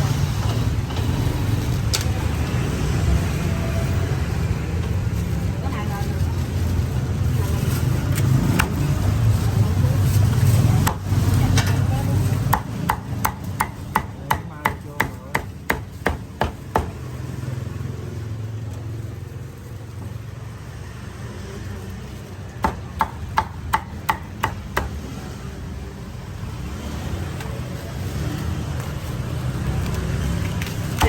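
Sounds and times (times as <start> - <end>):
traffic noise: 0.0 - 31.0
cleaver chopping meat: 12.4 - 17.1, 22.6 - 25.0.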